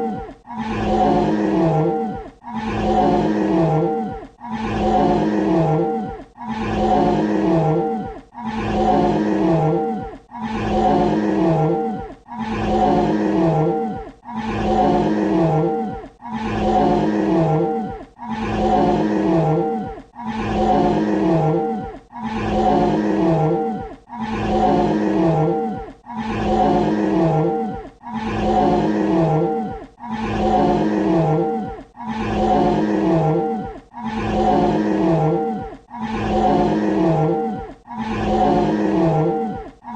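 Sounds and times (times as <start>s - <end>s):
deep growling dinosaur roar: 0.0s - 39.9s.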